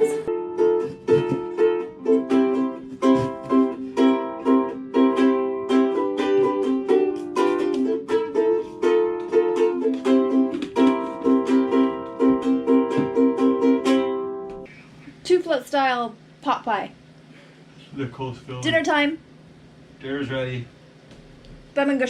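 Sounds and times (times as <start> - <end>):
upbeat ukulele tune: 0.0 - 14.7.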